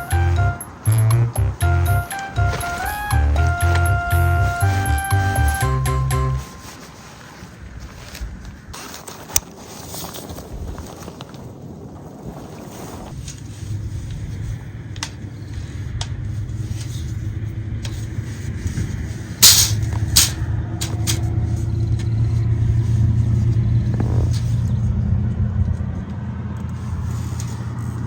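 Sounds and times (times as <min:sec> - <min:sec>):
low vehicle rumble: 0:00.0 - 0:06.6, 0:19.7 - 0:28.0.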